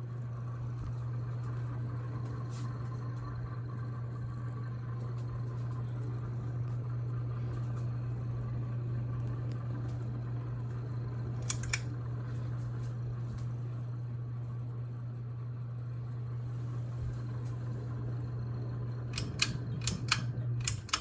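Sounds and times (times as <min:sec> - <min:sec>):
ceiling fan motor hum: 0:00.0 - 0:21.0
sharp clicks: 0:11.4 - 0:11.9, 0:19.1 - 0:21.0.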